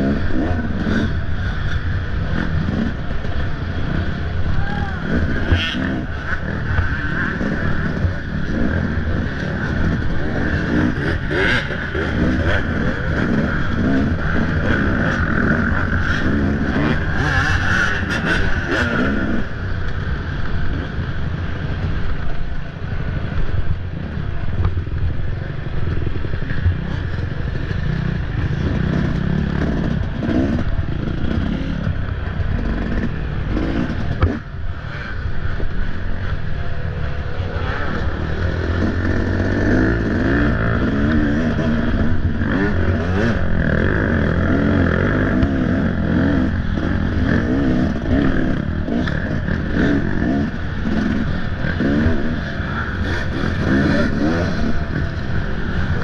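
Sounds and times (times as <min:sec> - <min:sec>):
dirt bike engine revving: 0:00.0 - 0:21.9, 0:25.4 - 0:56.0.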